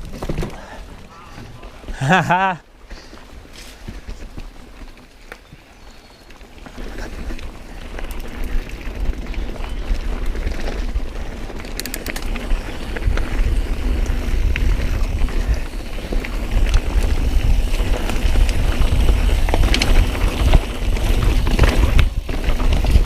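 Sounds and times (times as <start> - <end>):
bike clattering over bumps: 0.0 - 2.5, 6.7 - 23.0
tyres rumbling on dirt: 0.0 - 23.0
wind buffeting microphone: 6.7 - 23.0.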